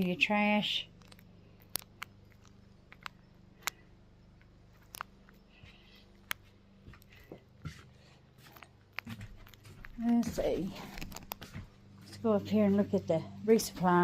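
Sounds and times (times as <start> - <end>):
low steady hum: 0.0 - 14.0
faint sharp clicks and knocks: 8.4 - 12.2.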